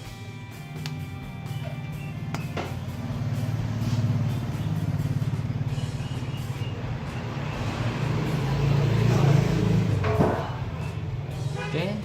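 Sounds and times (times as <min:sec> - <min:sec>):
car engine idling: 0:00.3 - 0:11.7
sharp clicks: 0:00.8 - 0:01.0.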